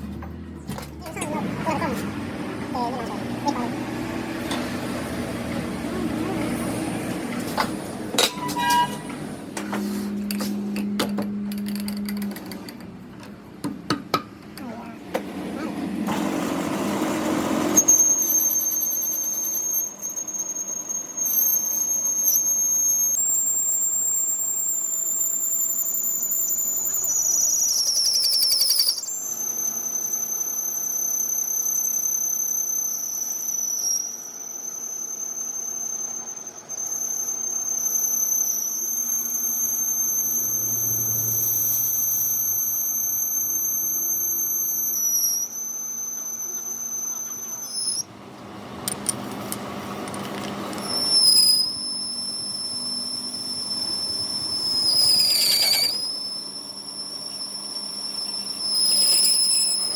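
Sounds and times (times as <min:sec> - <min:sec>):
machine tool whine: 0:00.0 - 0:13.3, 0:15.2 - 0:59.9.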